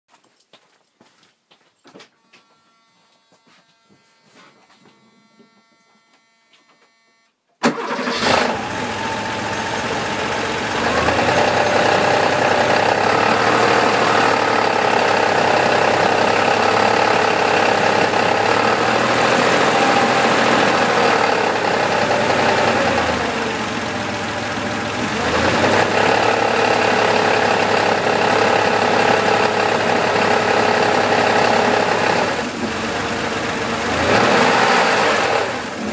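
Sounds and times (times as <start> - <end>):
car engine starting and running: 7.6 - 35.9.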